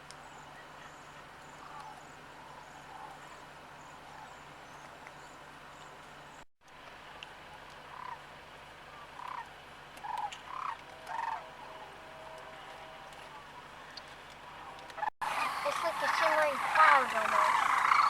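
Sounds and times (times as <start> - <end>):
cranes calling: 7.5 - 18.0.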